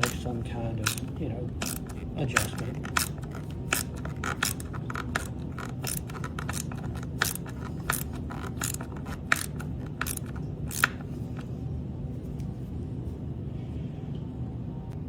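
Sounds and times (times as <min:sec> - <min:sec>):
hand ratchet clicking: 0:00.0 - 0:11.5
low steady hum: 0:00.0 - 0:15.0.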